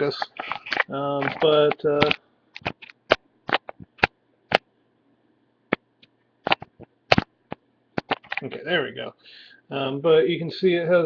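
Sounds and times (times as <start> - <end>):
handling clicks and taps: 6.5 - 8.6.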